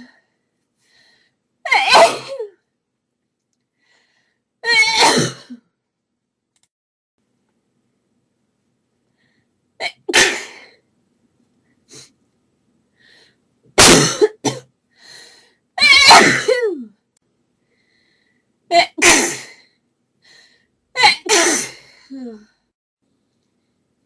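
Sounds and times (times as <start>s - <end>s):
woman sneezing: 1.7s - 2.5s, 15.8s - 16.8s.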